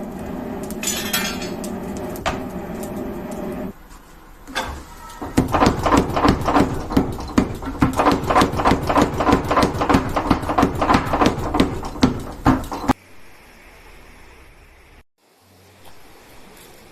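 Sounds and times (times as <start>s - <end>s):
rapid ringing hammer strikes: 4.6s - 13.0s.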